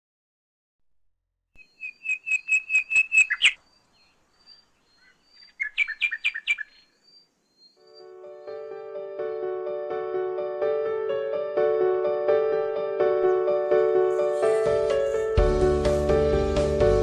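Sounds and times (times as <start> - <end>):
bird calling high sharp notes: 1.6 - 8.1
music: 8.0 - 17.0.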